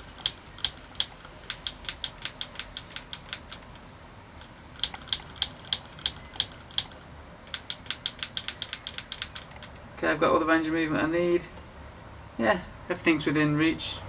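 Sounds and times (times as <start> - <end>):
bicycle shifter clicking: 0.0 - 9.8.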